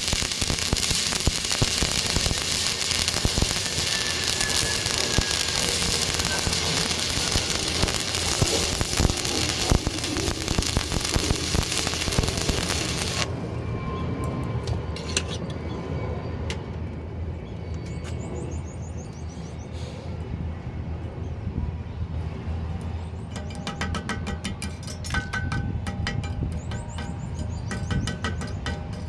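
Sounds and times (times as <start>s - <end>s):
welding arc crackling and hissing: 0.0s - 13.3s.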